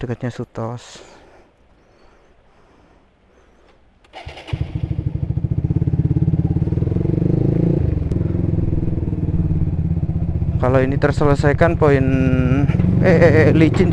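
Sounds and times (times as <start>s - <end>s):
motorcycle engine starting and running: 4.0s - 13.9s.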